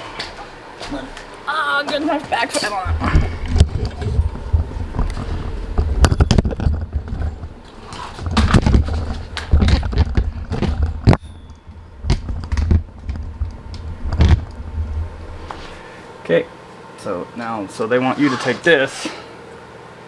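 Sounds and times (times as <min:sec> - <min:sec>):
clatter of parts and fasteners: 0:02.6 - 0:14.6
low rumble: 0:09.1 - 0:15.8.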